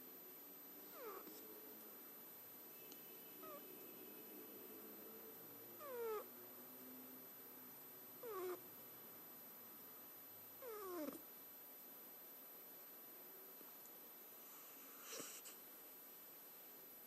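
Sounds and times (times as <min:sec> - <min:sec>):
cat snoring with whistle-like squeaks: 0:00.9 - 0:01.4, 0:03.2 - 0:06.4, 0:08.2 - 0:08.6, 0:10.6 - 0:11.2, 0:14.4 - 0:15.6.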